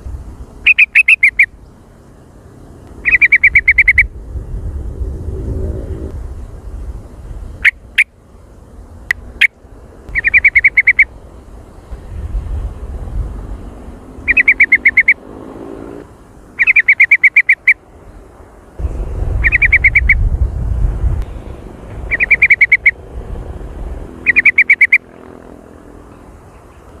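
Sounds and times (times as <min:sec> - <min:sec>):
bird chattering calls: 0:00.6 - 0:01.6, 0:03.0 - 0:04.1, 0:09.1 - 0:11.1, 0:14.2 - 0:15.2, 0:16.6 - 0:17.8, 0:19.4 - 0:20.3, 0:22.1 - 0:23.0, 0:24.2 - 0:25.2
low rumble: 0:04.0 - 0:07.4, 0:18.8 - 0:22.1.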